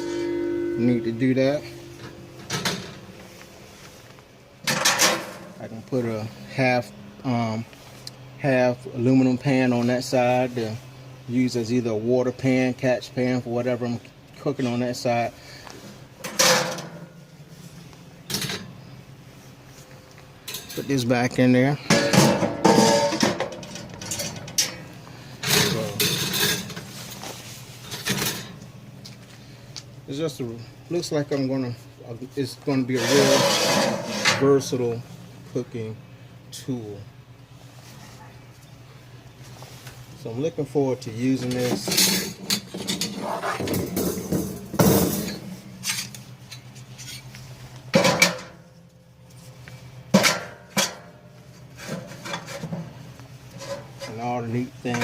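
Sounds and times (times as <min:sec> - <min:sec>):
metal grill parts clanking: 0:00.0 - 0:03.3, 0:04.6 - 0:05.8, 0:16.2 - 0:17.1, 0:20.4 - 0:21.2, 0:21.8 - 0:27.0, 0:27.8 - 0:28.6, 0:32.8 - 0:34.9, 0:41.3 - 0:47.3, 0:47.9 - 0:48.7, 0:50.1 - 0:54.3
metal scraping: 0:00.0 - 0:03.8, 0:32.9 - 0:34.7.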